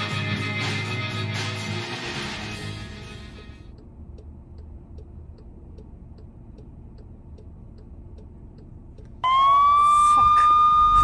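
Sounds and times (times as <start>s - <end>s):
faint even ticking: 3.7s - 9.2s
siren on a steady high tone: 9.2s - 11.0s.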